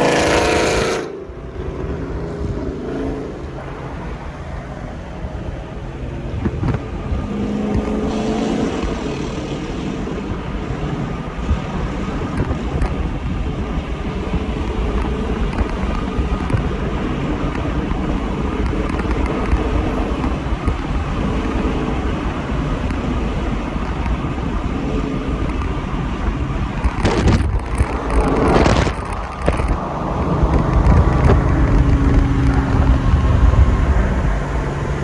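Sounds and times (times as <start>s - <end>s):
car engine and road noise: 0.0s - 35.0s
rush of noise: 0.0s - 35.0s.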